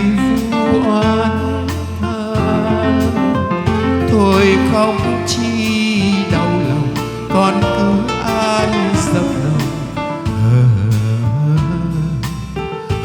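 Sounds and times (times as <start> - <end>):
song with instrumental accompaniment: 0.0 - 13.0.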